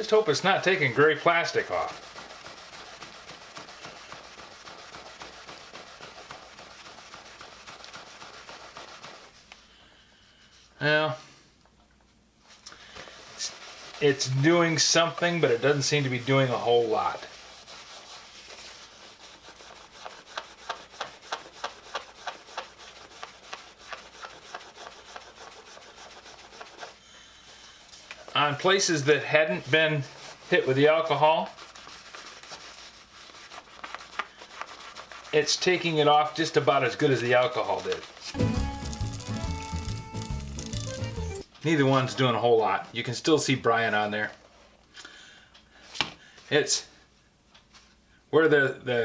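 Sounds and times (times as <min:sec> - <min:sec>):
paper scrubbing plastic case: 0:00.0 - 0:09.5, 0:12.9 - 0:27.0, 0:28.0 - 0:41.0.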